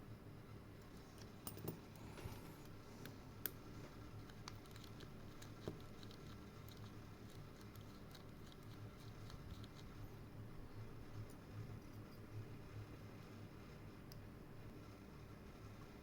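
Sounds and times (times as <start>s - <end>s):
low steady hum: 0.0s - 16.0s
small metal clicks and taps: 1.2s - 1.8s.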